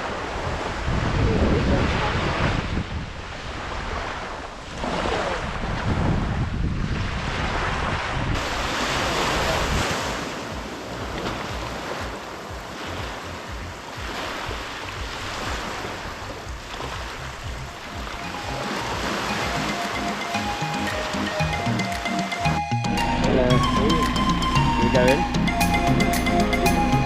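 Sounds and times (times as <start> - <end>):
wind buffeting microphone: 0.0 - 19.7
sea water rushing: 0.0 - 27.0.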